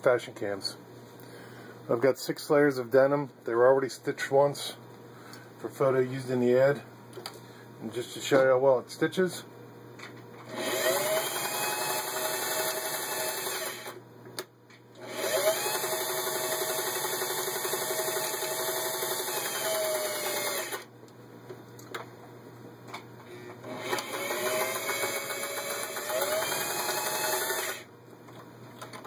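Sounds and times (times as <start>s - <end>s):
sewing machine motor running: 10.5s - 14.0s, 15.0s - 20.8s, 23.6s - 27.9s.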